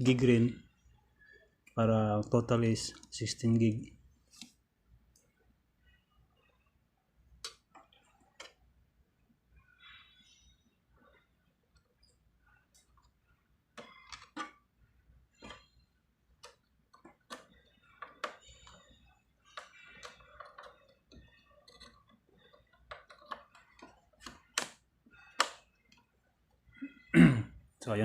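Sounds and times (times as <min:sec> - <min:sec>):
small plastic clicks: 0:16.4 - 0:26.1.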